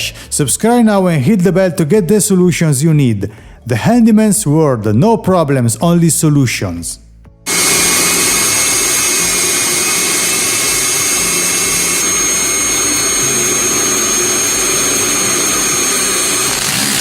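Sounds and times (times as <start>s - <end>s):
electric drill boring into wall: 7.5s - 17.0s
vacuum cleaner whining: 7.5s - 17.0s.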